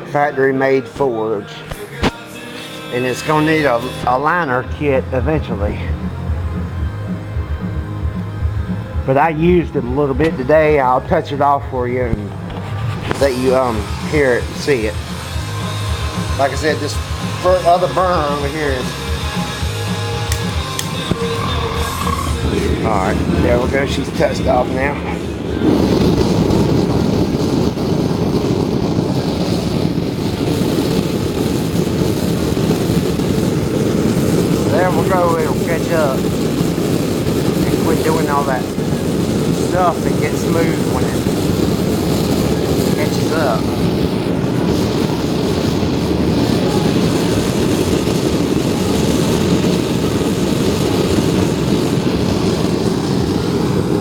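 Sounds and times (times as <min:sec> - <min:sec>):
gas forge burner rumbling: 0:03.0 - 0:54.0.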